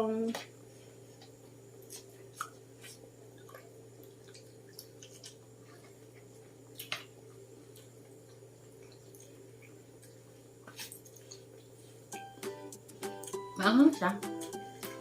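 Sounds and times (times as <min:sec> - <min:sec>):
wet eating mouth sounds: 0:01.8 - 0:12.0.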